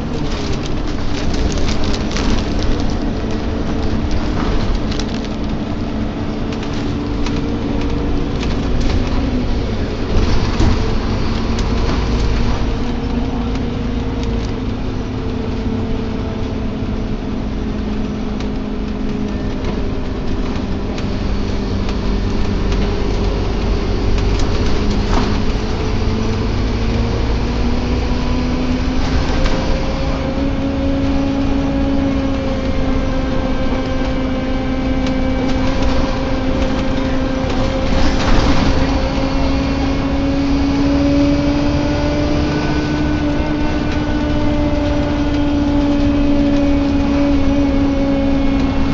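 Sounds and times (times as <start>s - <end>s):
bus body clicks and rattles: 0.0s - 48.9s
bus engine and road drone: 0.0s - 48.9s
groaning tone rising and falling: 22.8s - 48.9s.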